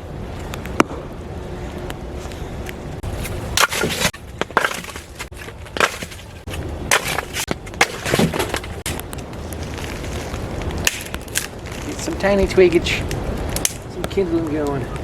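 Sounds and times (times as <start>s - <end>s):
wind noise: 0.0s - 15.0s
wood crunching and cracking: 3.0s - 12.3s.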